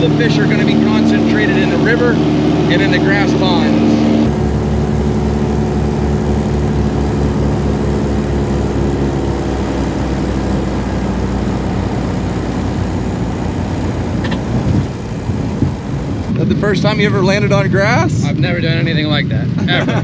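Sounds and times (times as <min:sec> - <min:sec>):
propeller plane engine drone: 0:04.3 - 0:16.3.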